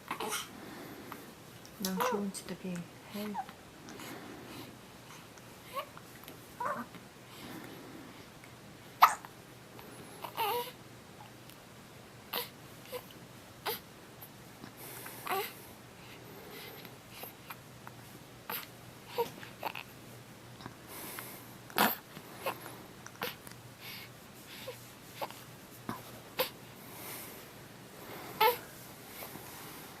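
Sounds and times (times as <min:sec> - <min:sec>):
baby hiccuping: 0:01.9 - 0:02.2, 0:09.0 - 0:09.3.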